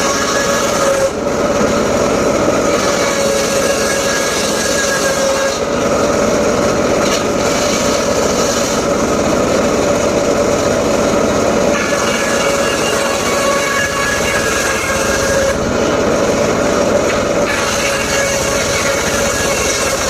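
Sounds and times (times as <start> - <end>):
circular saw cutting wood: 0.0 - 20.0.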